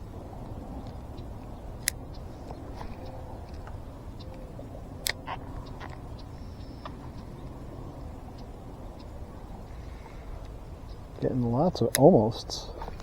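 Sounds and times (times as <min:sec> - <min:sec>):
low outdoor background: 0:00.0 - 0:13.0
sharp clicks: 0:05.0 - 0:09.1, 0:10.4 - 0:13.0.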